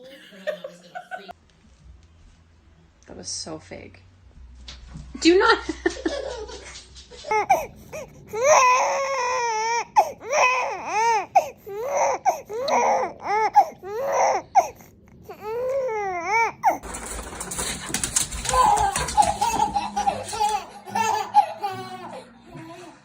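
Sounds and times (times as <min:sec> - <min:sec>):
baby crying: 0:07.2 - 0:16.9, 0:18.2 - 0:23.0.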